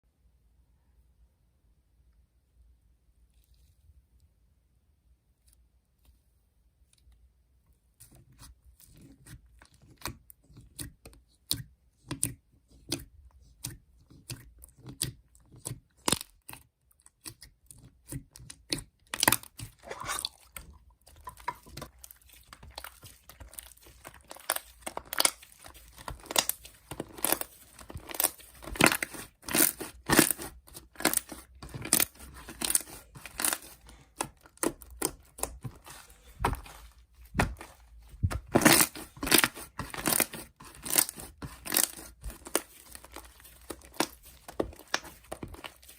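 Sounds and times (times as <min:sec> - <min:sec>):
crisp crunching and tearing: 0:19.2 - 0:45.9.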